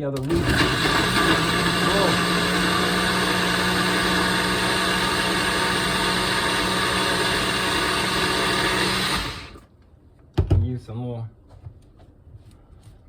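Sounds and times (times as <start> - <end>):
blender running: 0.2 - 9.7.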